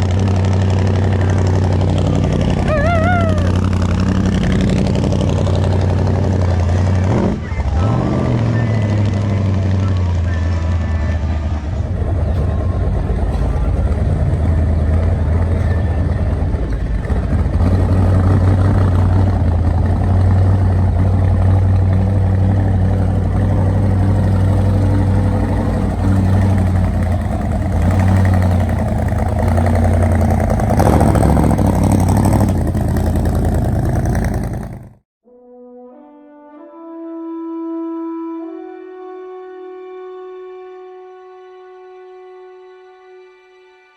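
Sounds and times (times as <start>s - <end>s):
loud car engine running: 0.0s - 35.0s.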